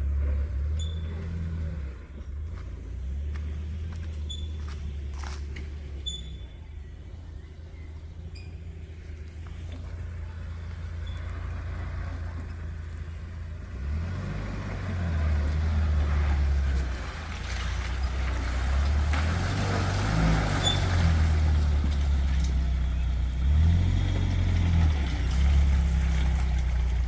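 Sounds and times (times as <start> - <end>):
motorboat engine humming: 0.0 - 13.8.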